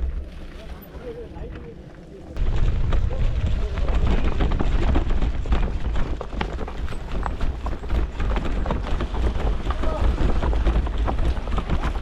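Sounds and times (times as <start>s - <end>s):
mountain bike rattling and knocking: 2.4s - 12.0s
wind rumble on microphone: 2.4s - 12.0s.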